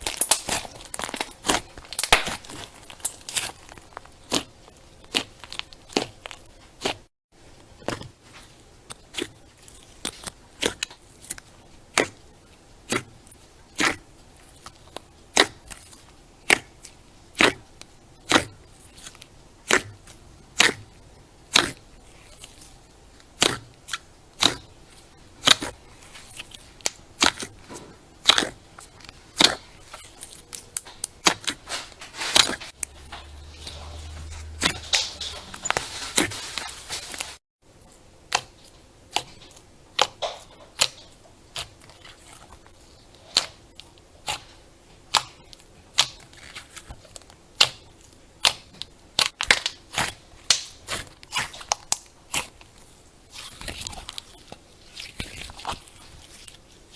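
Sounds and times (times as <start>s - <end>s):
crunchy slime crackling pops: 0.0s - 7.0s, 14.6s - 17.6s, 18.2s - 20.8s, 21.5s - 22.7s, 23.3s - 24.7s, 25.4s - 27.6s, 28.2s - 31.6s, 45.1s - 56.5s.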